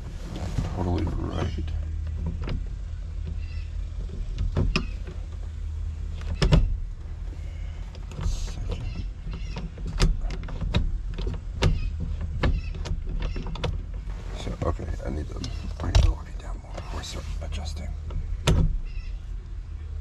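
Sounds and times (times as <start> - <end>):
gear shifter metallic clicks: 0.0 - 17.1
steady low hum: 0.0 - 20.0.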